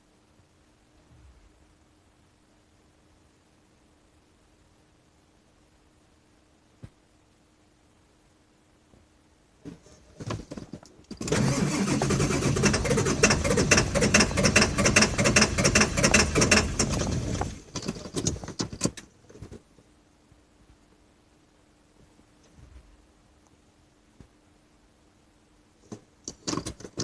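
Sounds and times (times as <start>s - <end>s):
diesel engine cranking: 11.1s - 18.3s.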